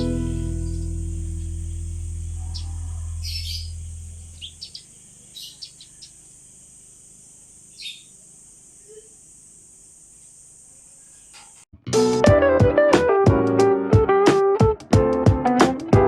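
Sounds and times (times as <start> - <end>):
background music: 0.0 - 1.4, 11.8 - 16.0
birds chirping high: 0.0 - 11.7
steady high hiss: 0.0 - 11.7.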